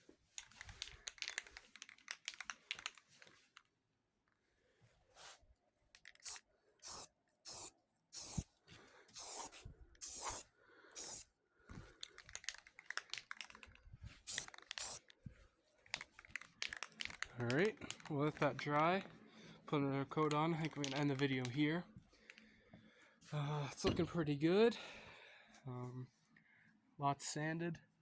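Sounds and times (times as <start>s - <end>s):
aerosol spray can hissing: 6.2s - 8.5s, 9.2s - 11.3s, 14.2s - 15.0s.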